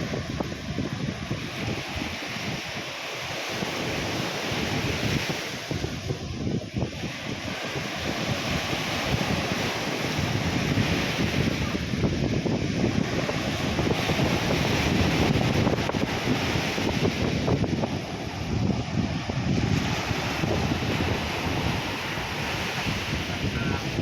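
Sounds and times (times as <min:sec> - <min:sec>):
sea waves breaking on beach: 0:00.0 - 0:24.0
wind buffeting microphone: 0:00.0 - 0:24.0.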